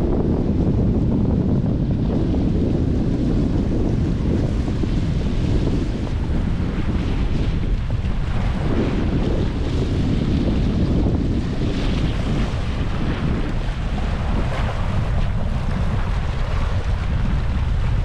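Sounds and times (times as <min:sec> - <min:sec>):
wind blowing over microphone: 0:00.0 - 0:18.0.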